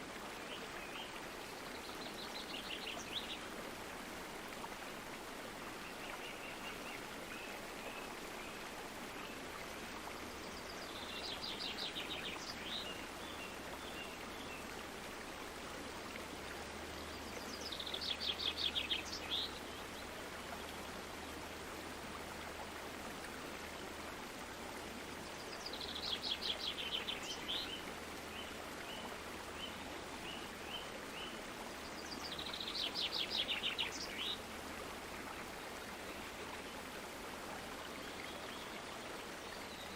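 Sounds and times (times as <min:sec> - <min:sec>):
flowing stream: 0:00.0 - 0:39.9
songbird singing: 0:17.0 - 0:20.0, 0:25.4 - 0:34.4.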